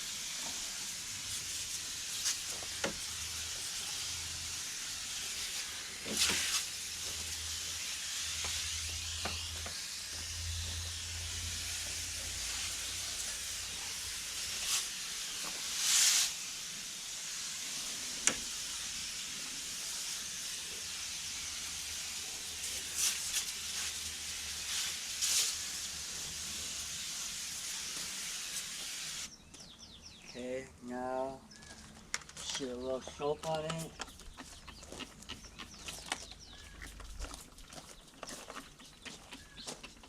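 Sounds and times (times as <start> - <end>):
water spraying from a wand: 0.0 - 29.3.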